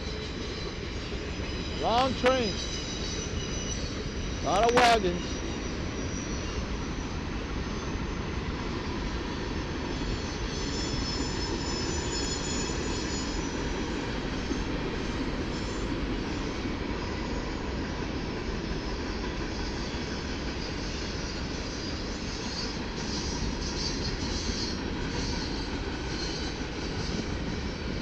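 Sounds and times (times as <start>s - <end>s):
high wheel squeal: 0.0s - 8.2s, 10.0s - 13.7s, 19.7s - 27.8s
train wagons rolling past: 0.0s - 28.0s.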